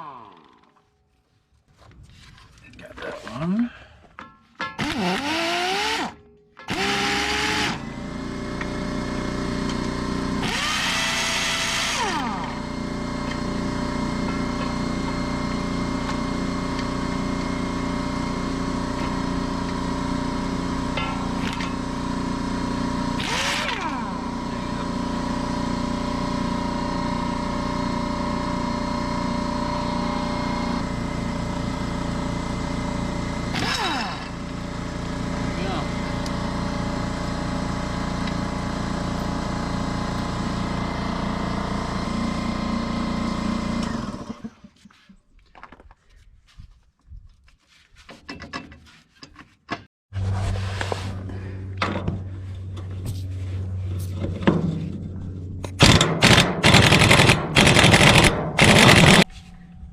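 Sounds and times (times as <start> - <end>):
air compressor running: 4.2 - 44.7, 51.0 - 59.9.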